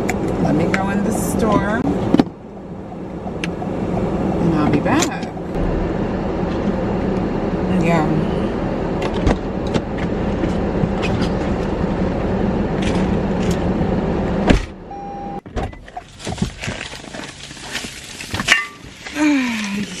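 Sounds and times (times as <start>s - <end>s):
car cabin hum: 0.0s - 16.1s
loud clunk: 5.6s - 6.8s
brief beep: 14.9s - 15.4s.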